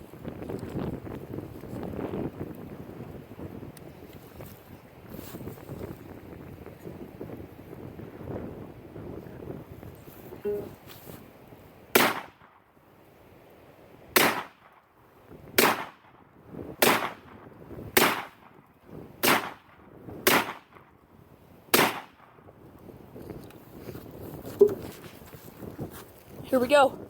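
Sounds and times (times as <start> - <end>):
rifle shots: 12.0 - 12.5, 14.2 - 14.7, 15.6 - 16.1, 16.8 - 17.3, 18.0 - 18.4, 19.2 - 20.8, 21.7 - 22.2.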